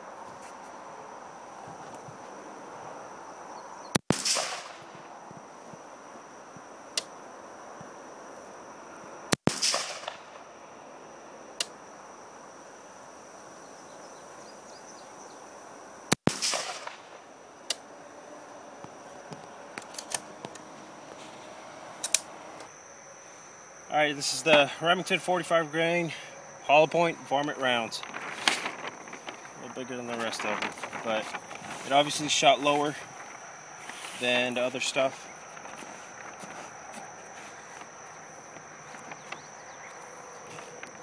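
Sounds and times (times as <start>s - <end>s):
rifle shots with echo: 4.1s - 5.0s, 9.4s - 10.4s, 16.2s - 17.2s.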